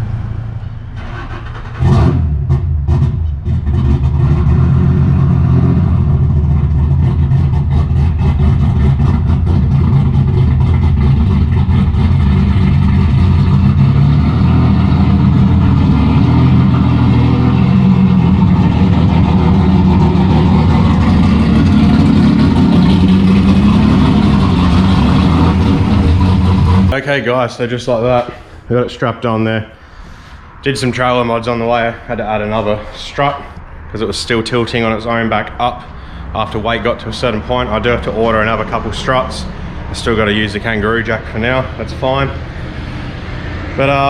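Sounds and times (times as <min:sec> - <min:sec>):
car engine running at low revs: 0:01.8 - 0:27.0.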